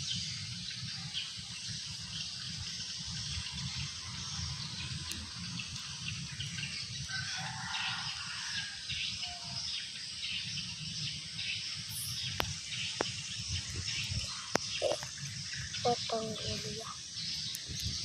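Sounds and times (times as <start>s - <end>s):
low rumble and hiss: 0.0s - 18.0s
bird calling: 13.8s - 17.6s.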